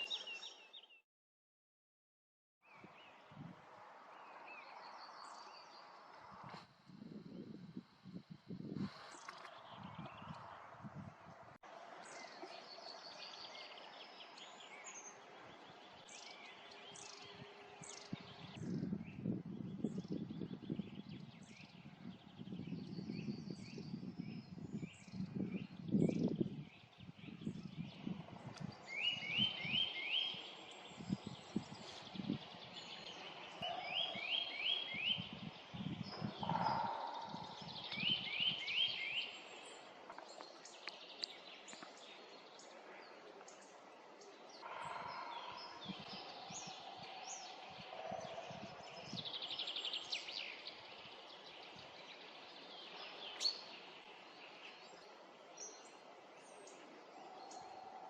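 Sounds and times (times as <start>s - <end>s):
high bird chirps: 33.2s - 39.2s.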